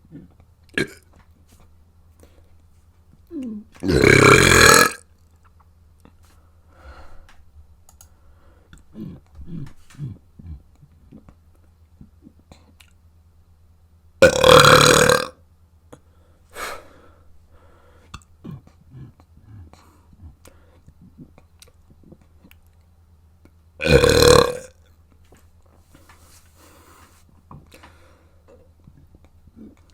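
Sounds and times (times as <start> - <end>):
person burping: 0.1 - 1.1, 3.8 - 5.1, 14.2 - 15.4, 23.8 - 24.8.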